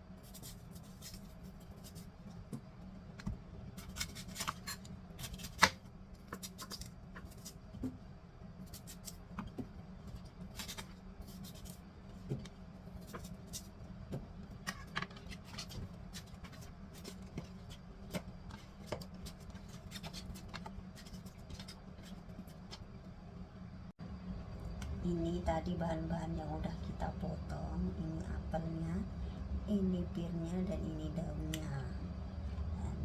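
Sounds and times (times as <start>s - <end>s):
steady low hum: 0.0s - 33.0s
knife cutting fruit and leaves: 0.2s - 2.1s, 3.8s - 8.0s, 8.6s - 9.6s.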